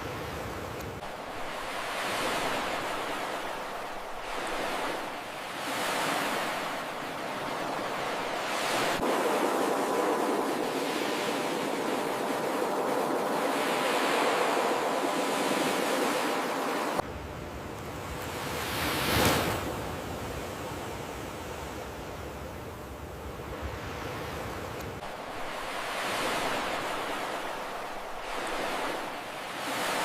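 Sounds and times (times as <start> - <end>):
ocean waves breaking: 0.0 - 17.0, 23.4 - 30.0.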